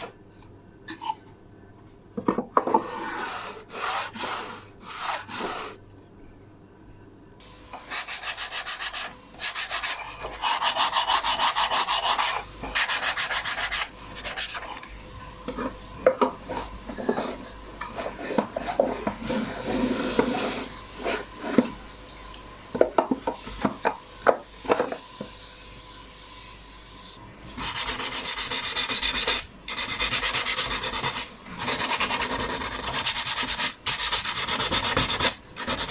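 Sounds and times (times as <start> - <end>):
sandpaper rubbing wood: 2.8 - 5.8, 7.9 - 14.6, 27.5 - 35.9.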